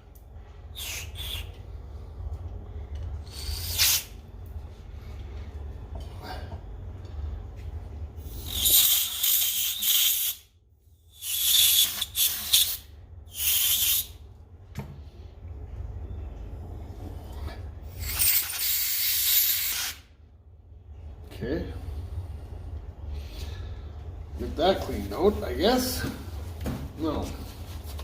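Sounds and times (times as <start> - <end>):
aerosol spray hissing: 8.3 - 10.4, 11.2 - 14.1.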